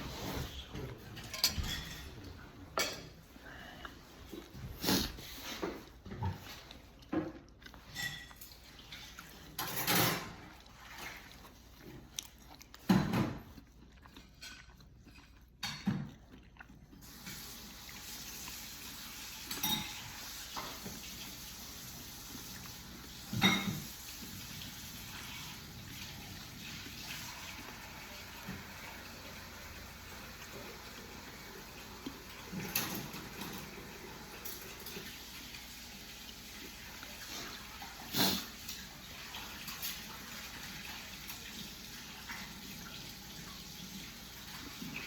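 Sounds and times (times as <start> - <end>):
spoon clinking against bowl: 19.5 - 20.0.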